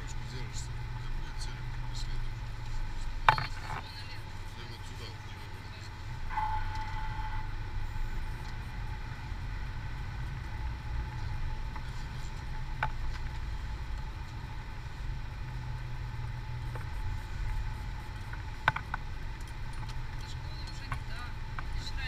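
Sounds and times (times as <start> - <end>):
road and engine rumble: 0.0 - 22.0
faint high tone: 6.2 - 8.9.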